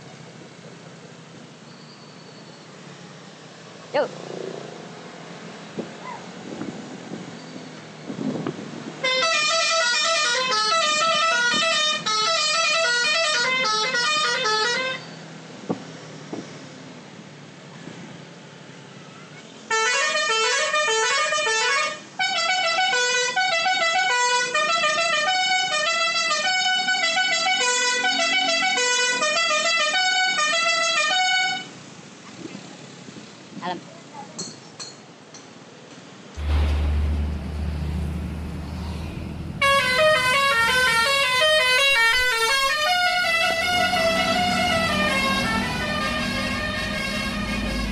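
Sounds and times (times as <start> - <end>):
musical bus horn melody: 9.0 - 15.1, 19.7 - 31.7, 39.6 - 47.9
low hum: 36.4 - 39.6.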